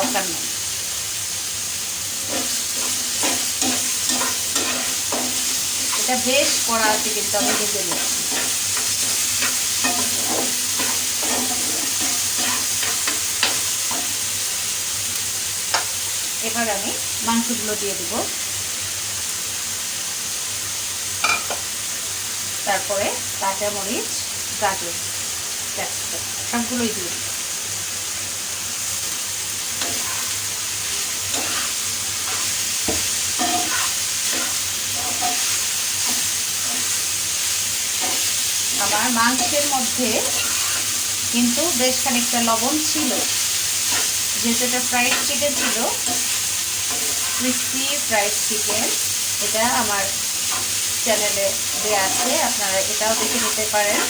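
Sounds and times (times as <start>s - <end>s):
tomatoes sizzling in oil: 0.0s - 54.0s
spatula scraping a pan: 2.2s - 14.2s, 29.8s - 41.2s, 42.9s - 47.8s, 50.4s - 54.0s.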